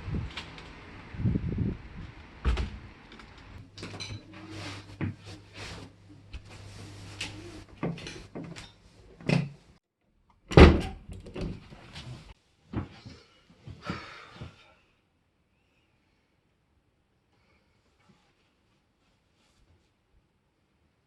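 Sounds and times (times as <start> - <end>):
door banging shut: 2.4 - 2.9, 10.5 - 11.6
door knocks and thuds: 2.4 - 2.9, 10.5 - 11.6.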